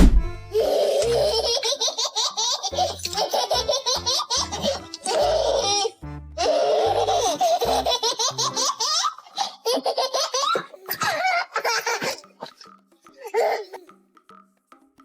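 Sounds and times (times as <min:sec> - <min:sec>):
baby laughing: 0:00.1 - 0:13.9.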